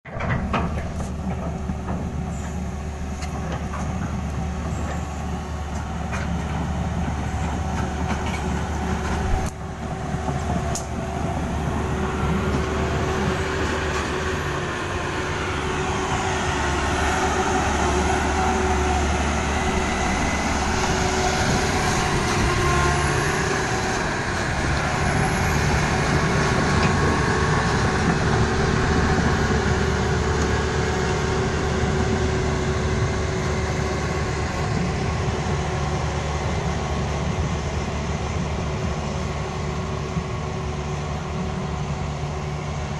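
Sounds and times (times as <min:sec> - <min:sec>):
excavator diesel engine drone: 0:00.1 - 0:42.9.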